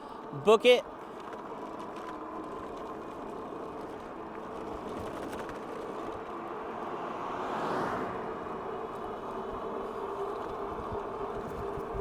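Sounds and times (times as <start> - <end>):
car passing by: 5.0 - 12.0
hub motor whine: 8.2 - 12.0
wind on microphone: 10.7 - 12.0.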